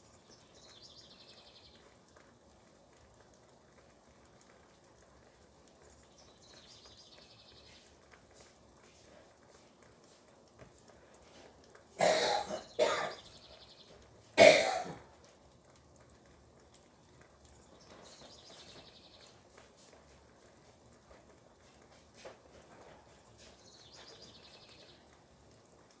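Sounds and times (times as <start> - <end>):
person coughing: 12.0 - 13.3, 14.4 - 15.1.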